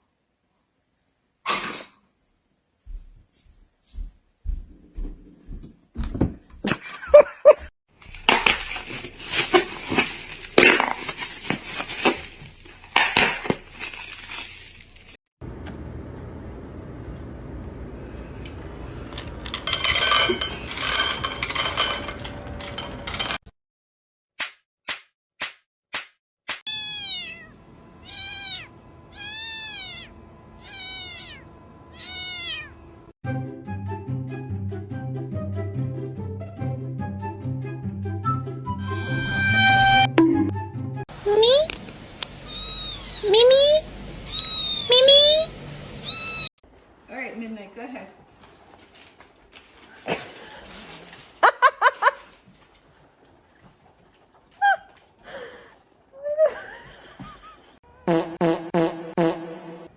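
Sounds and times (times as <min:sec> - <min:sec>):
cat meowing: 0:26.7 - 0:32.8, 0:42.4 - 0:43.5, 0:44.3 - 0:46.5
music: 0:33.2 - 0:41.0.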